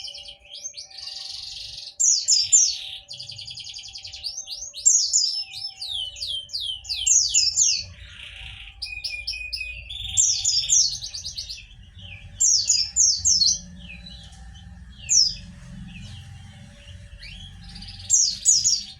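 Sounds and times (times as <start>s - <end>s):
bird chirping: 0.0s - 18.9s.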